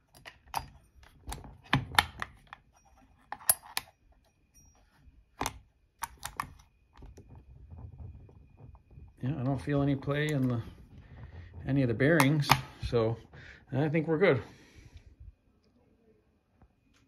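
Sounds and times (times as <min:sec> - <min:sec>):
metal parts clicking and tapping: 0:00.0 - 0:04.3.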